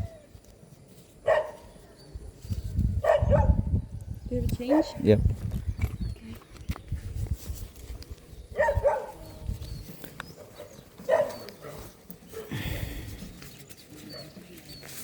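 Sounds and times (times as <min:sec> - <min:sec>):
dog barking: 0:01.2 - 0:01.7, 0:03.0 - 0:03.7, 0:08.6 - 0:09.2, 0:10.4 - 0:12.6.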